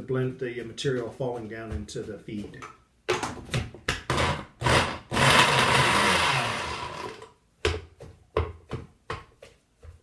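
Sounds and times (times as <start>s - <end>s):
blender pulsing: 4.1s - 7.3s.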